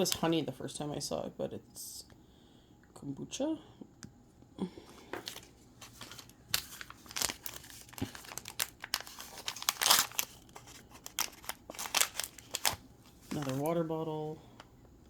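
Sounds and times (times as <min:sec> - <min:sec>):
plastic wrapping crinkling and tearing: 0:05.2 - 0:13.8.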